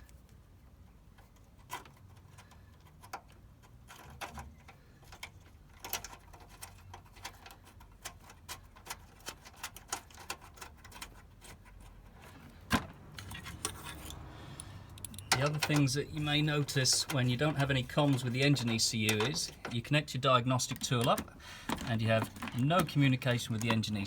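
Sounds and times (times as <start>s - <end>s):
metallic clicks of hand tools: 13.2s - 16.3s.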